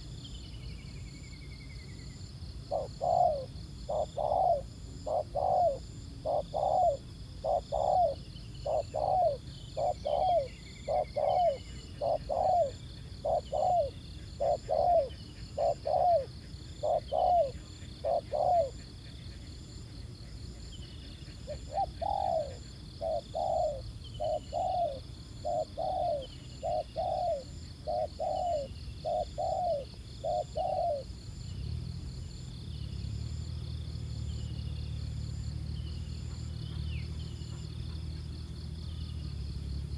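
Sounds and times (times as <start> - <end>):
dove cooing: 2.6 - 32.4.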